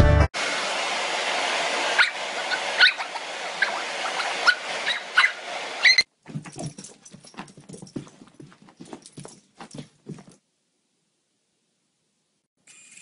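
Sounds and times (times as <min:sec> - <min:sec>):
dog whimpering: 0:02.0 - 0:06.1.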